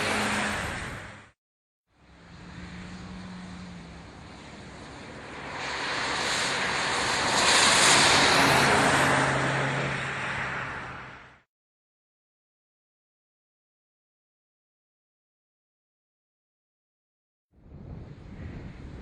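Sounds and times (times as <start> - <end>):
car driving past: 2.0 - 11.4.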